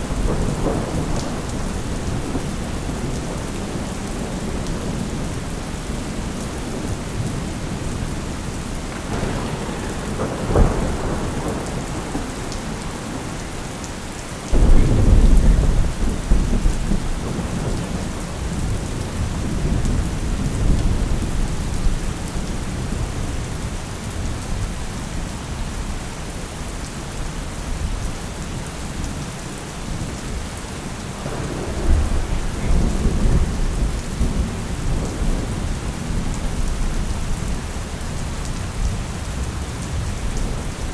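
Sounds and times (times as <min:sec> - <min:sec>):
thunder crack: 0:00.0 - 0:05.2, 0:08.8 - 0:21.6, 0:31.2 - 0:37.5
low rumble of thunder: 0:00.0 - 0:26.8, 0:27.5 - 0:40.9
steady rain falling: 0:00.0 - 0:40.9.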